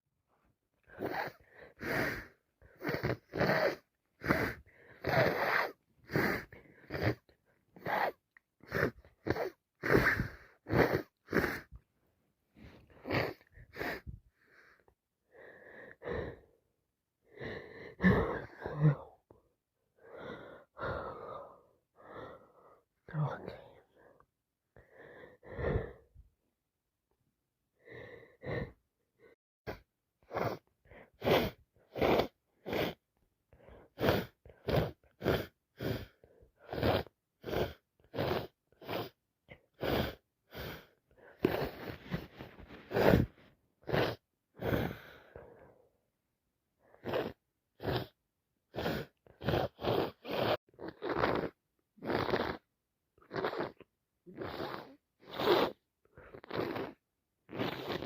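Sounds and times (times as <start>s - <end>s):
snuffly breathing: 0.9s - 11.8s, 12.6s - 16.6s, 33.6s - 45.9s
woman sniffing and sneezing: 0.9s - 11.8s, 12.6s - 14.2s, 29.7s - 33.0s, 33.9s - 39.2s, 39.8s - 45.1s, 46.9s - 58.0s.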